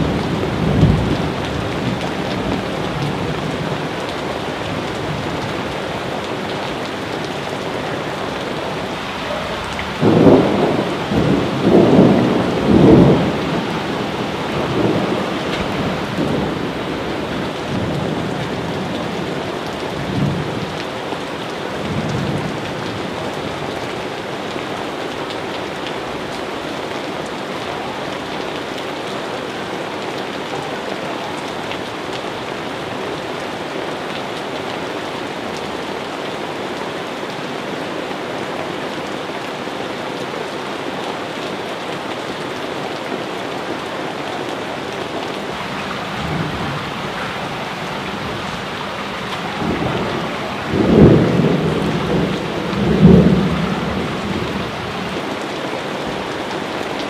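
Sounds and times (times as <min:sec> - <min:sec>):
thunder rumbling: 0:00.0 - 0:04.0, 0:06.7 - 0:20.8, 0:45.4 - 0:55.4
heavy rain falling: 0:00.0 - 0:57.0.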